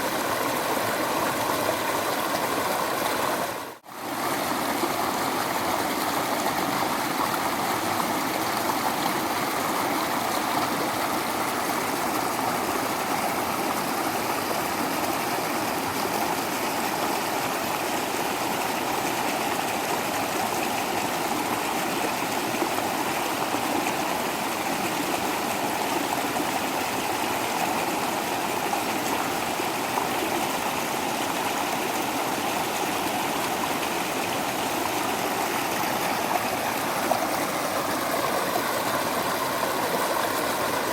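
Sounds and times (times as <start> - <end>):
water rushing over rocks: 0.0 - 40.9.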